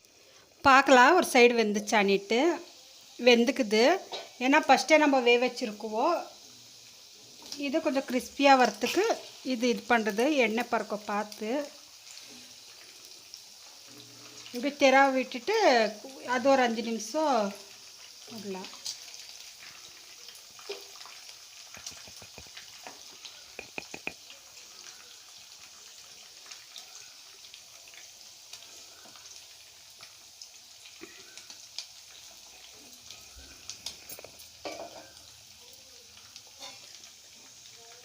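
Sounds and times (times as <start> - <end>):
chicken sizzling in hot oil: 0.0 - 38.0
oil crackling and popping: 5.6 - 38.0.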